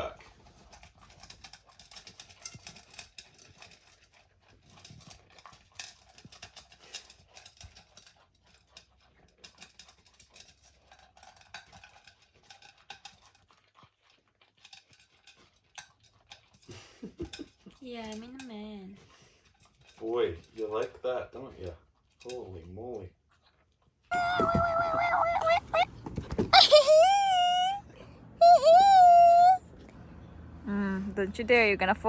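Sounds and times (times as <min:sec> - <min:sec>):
puppy eating from bowl: 0:00.0 - 0:26.6.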